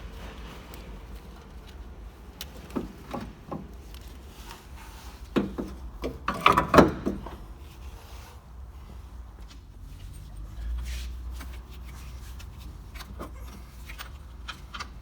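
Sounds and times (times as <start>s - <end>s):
hard objects knocking and clunking: 5.3s - 7.4s.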